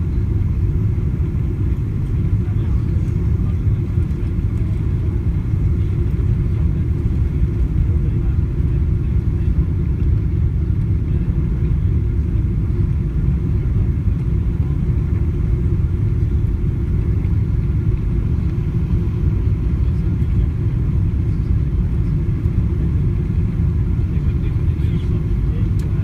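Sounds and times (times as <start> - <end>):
airplane cabin engine rumble: 0.0 - 26.0.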